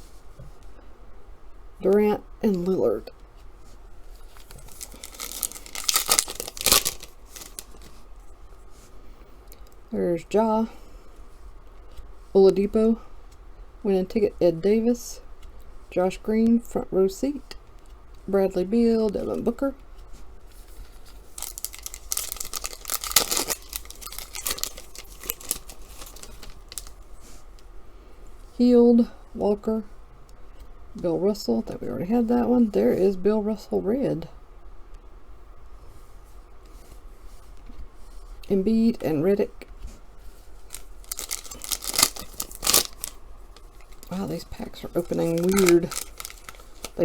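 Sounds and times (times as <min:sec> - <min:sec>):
wrapper tearing and crinkling: 0:04.2 - 0:08.0, 0:20.6 - 0:27.4, 0:40.4 - 0:47.0.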